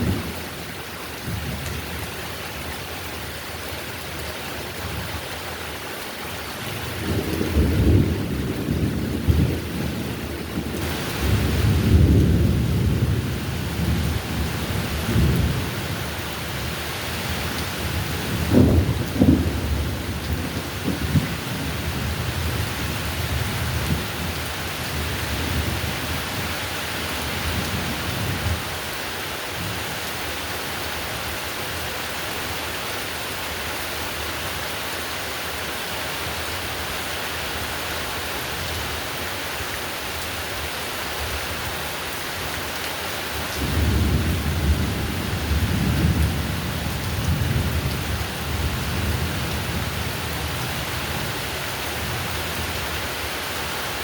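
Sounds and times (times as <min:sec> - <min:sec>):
heavy rain: 0:00.0 - 0:54.0
thunder rumbling: 0:06.8 - 0:26.6, 0:43.6 - 0:51.4.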